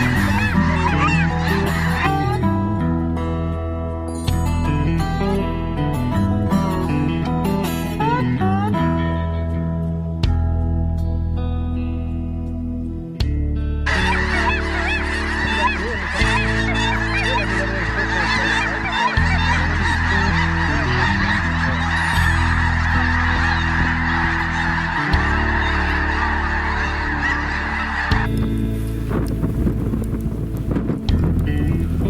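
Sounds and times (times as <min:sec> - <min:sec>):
geese honking: 0:00.0 - 0:02.5, 0:13.9 - 0:28.4
music with slow sustained chords: 0:00.0 - 0:32.0.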